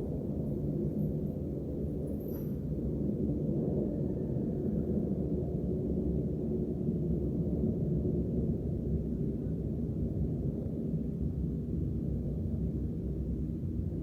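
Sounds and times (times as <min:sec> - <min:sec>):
jet engines deep rumble: 0:00.0 - 0:14.0.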